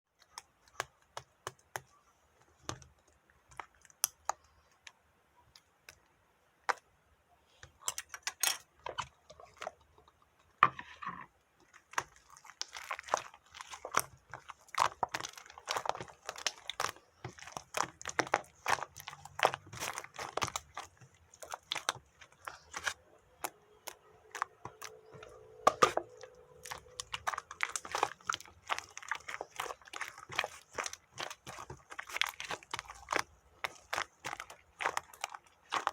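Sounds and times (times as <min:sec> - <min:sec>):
pet crunching food: 0:12.0 - 0:35.9.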